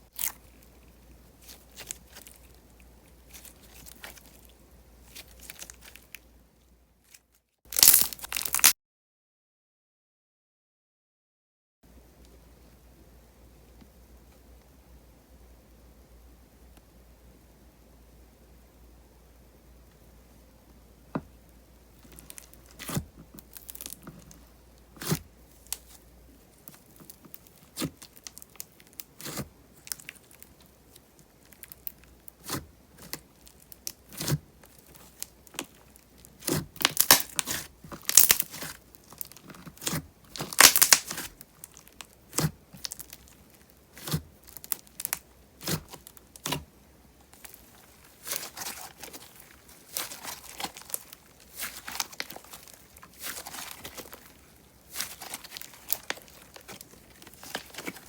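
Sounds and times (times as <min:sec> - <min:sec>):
slime being pressed by hand: 0:26.7 - 0:30.4, 0:31.4 - 0:46.7.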